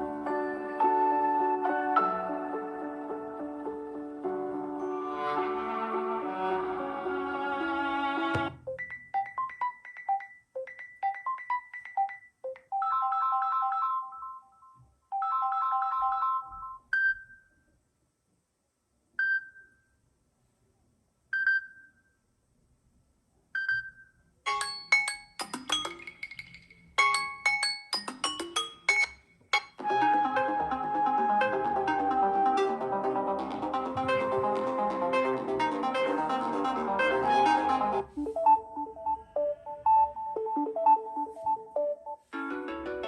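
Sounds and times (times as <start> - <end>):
percussive ringtone tune: 8.4 - 16.8, 24.5 - 42.3
plucked ringtone melody: 8.6 - 16.6, 24.5 - 43.0.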